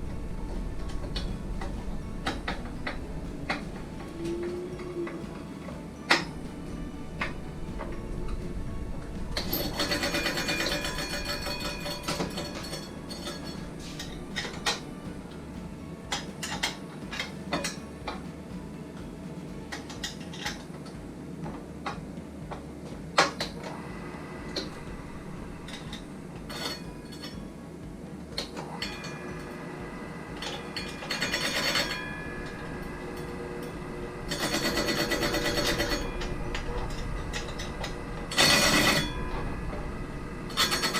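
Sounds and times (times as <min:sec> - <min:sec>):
metal rattling: 0:00.0 - 0:40.9
steady low hum: 0:00.0 - 0:40.9.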